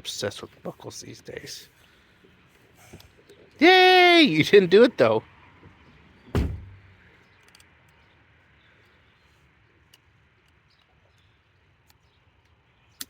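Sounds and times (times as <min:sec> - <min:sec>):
sharp thump: 0:06.3 - 0:06.8.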